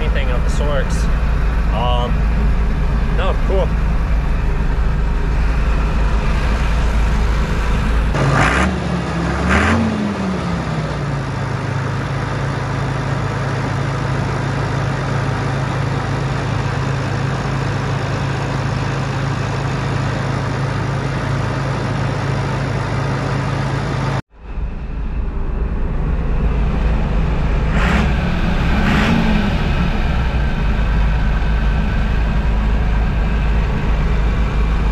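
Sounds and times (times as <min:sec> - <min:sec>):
combine diesel engine running: 0:00.0 - 0:34.9.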